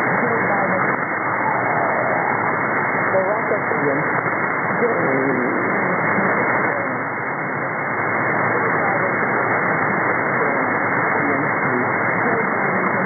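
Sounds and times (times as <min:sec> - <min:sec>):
faint voice over radio: 0:00.0 - 0:02.4, 0:03.1 - 0:07.2, 0:08.4 - 0:13.0
muffled radio hiss: 0:00.0 - 0:13.0.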